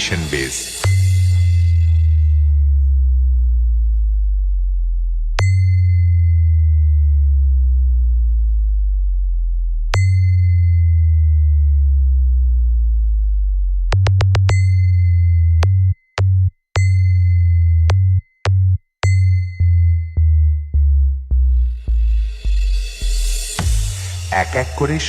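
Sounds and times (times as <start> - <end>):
bell-like ping: 0.0 - 2.5, 5.4 - 7.0, 10.0 - 11.5
chopped bass stabs: 0.0 - 25.0
deep bass hum tones: 0.0 - 25.0.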